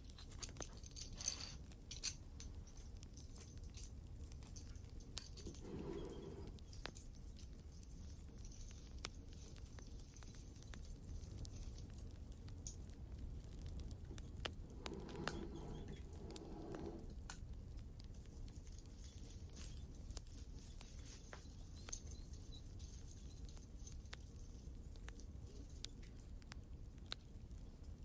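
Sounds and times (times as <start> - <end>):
soft handling rustle: 0.0 - 7.4, 8.4 - 17.3
wood fire crackling: 0.0 - 28.0.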